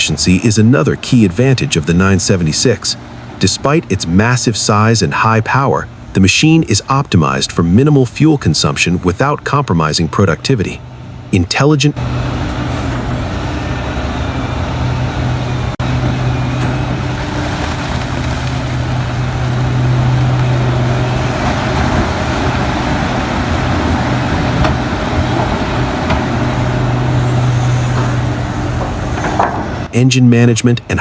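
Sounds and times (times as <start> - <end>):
heavy diesel machinery running: 0.8 - 4.1, 12.0 - 29.9.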